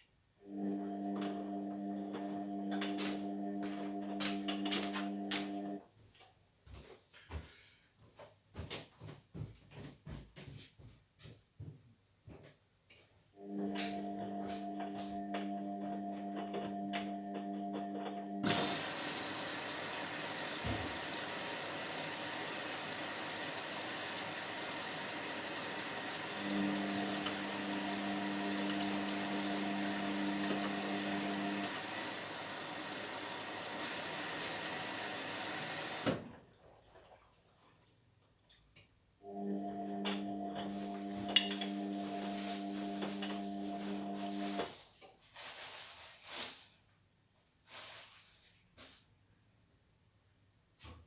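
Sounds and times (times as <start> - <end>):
washing machine humming: 0.4 - 5.8, 13.4 - 37.6, 39.2 - 44.8
water rushing into washing machine: 17.4 - 38.0, 39.3 - 44.7.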